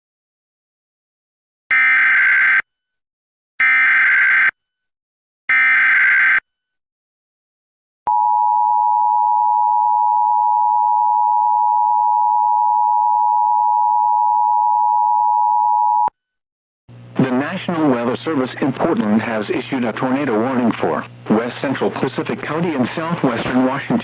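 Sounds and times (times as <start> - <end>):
steady attention signal tone: 8.1 - 16.1.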